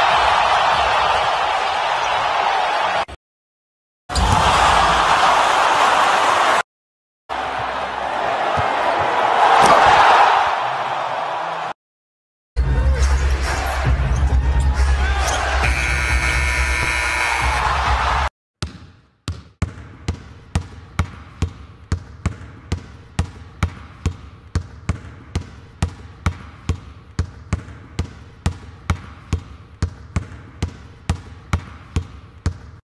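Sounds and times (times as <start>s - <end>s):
crowd noise: 7.3s - 11.7s.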